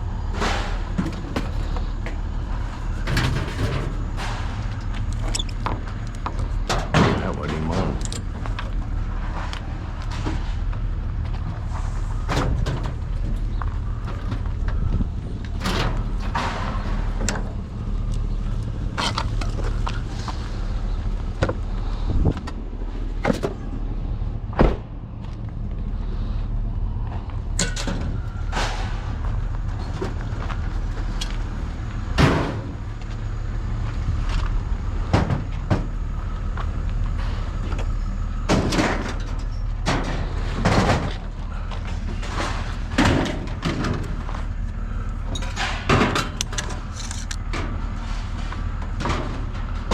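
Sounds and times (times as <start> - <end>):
low engine rumble: 0.0 - 49.9
scrap metal clanking: 0.2 - 8.5, 11.6 - 17.6, 38.5 - 49.9.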